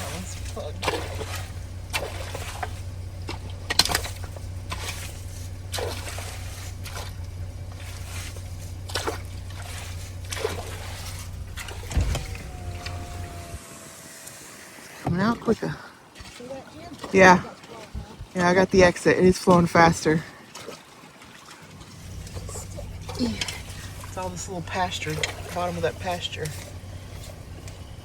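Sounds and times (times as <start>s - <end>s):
knocks and splashes: 0.0s - 13.7s, 14.8s - 28.0s
steady low hum: 0.0s - 16.1s, 21.7s - 28.0s
water sloshing and trickling: 0.0s - 28.0s.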